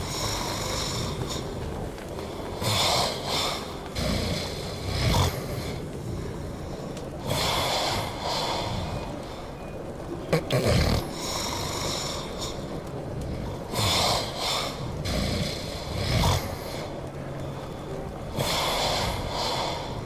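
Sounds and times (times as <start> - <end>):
person snoring loudly: 2.6 - 5.8, 13.7 - 16.9, 18.3 - 20.0.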